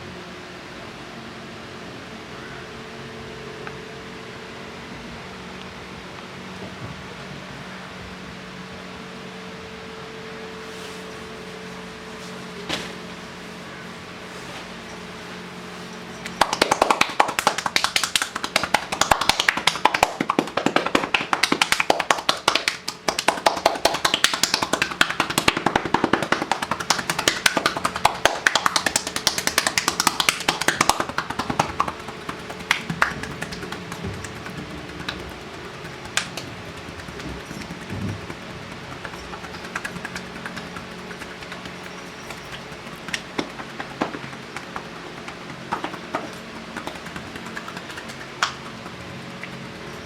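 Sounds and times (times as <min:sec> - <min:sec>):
hands slapping a back: 0:16.2 - 0:50.0.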